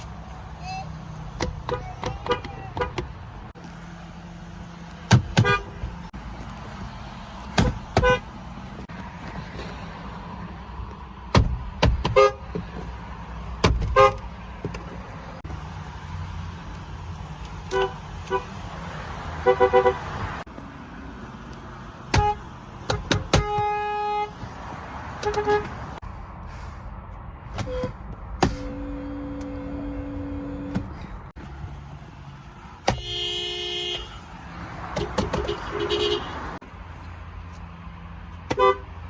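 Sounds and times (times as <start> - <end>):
outdoor background noise: 0.0 - 39.0
car horns honking: 1.4 - 3.3, 5.1 - 6.1, 7.5 - 8.4, 11.9 - 12.9, 13.6 - 14.7, 17.6 - 18.7, 19.3 - 20.4, 22.0 - 26.0, 27.5 - 31.1, 32.8 - 36.6, 38.4 - 39.0.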